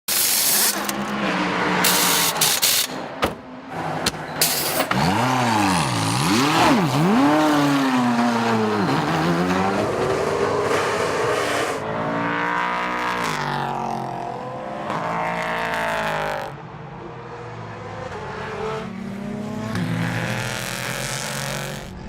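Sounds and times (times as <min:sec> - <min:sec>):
race car engines at speed: 0:00.5 - 0:22.0
race car revving through gears: 0:04.7 - 0:16.5, 0:17.2 - 0:22.0.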